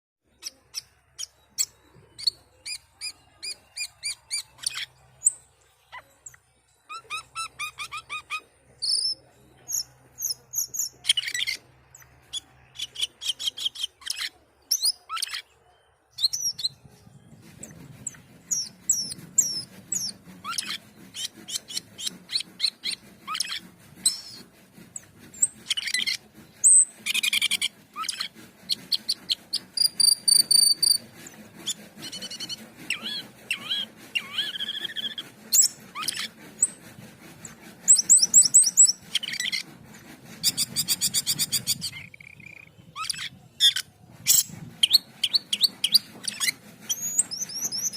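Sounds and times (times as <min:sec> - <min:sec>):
bird singing shrill notes: 0:00.3 - 0:17.4, 0:37.4 - 0:39.7, 0:40.4 - 0:47.9.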